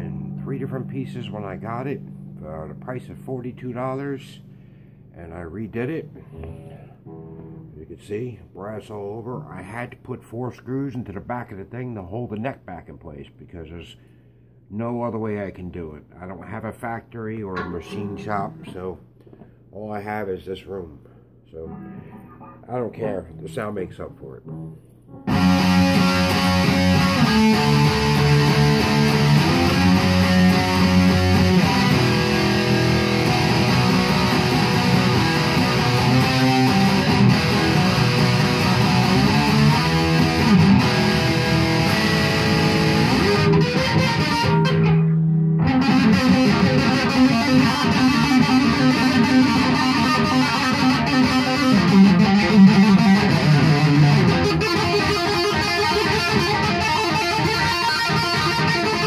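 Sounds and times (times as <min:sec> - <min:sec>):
electric guitar through amplifier: 0:00.0 - 0:08.0, 0:17.5 - 0:19.6, 0:21.6 - 0:23.6, 0:24.5 - 0:59.0.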